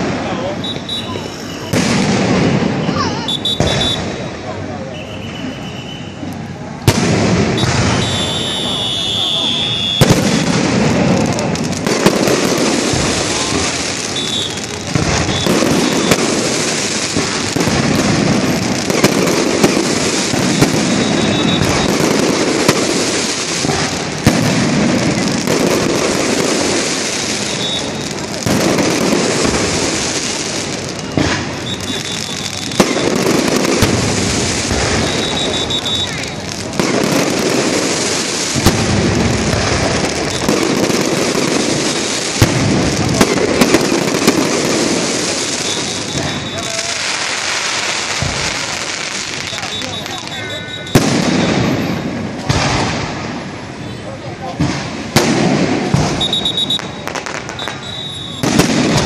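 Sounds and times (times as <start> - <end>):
sharp firework pops: 0.0 - 4.2, 5.0 - 53.4, 54.5 - 59.0
fireworks hissing and crackling: 0.0 - 59.0.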